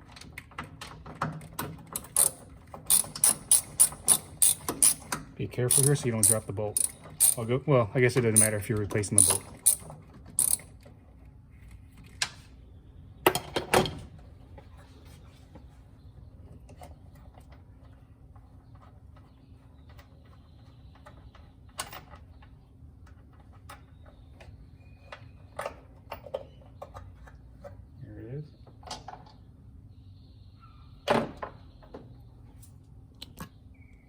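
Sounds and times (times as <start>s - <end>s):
metal hardware knocking: 2.0s - 7.5s, 8.3s - 10.6s
socket ratchet clicking: 2.0s - 7.5s, 8.3s - 10.7s.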